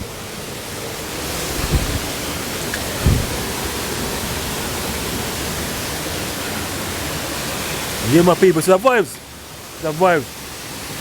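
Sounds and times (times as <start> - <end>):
waterfall roaring: 0.0 - 11.0
low thuds: 1.4 - 2.2, 3.0 - 3.6.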